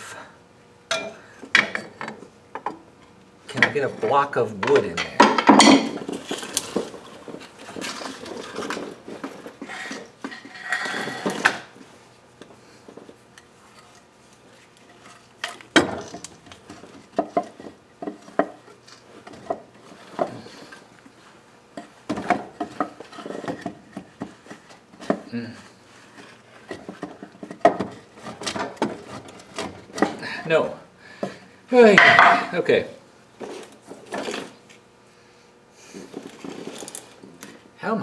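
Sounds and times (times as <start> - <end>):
hand tools and metal clinking: 0.9 - 2.8, 3.5 - 11.8, 31.9 - 32.6.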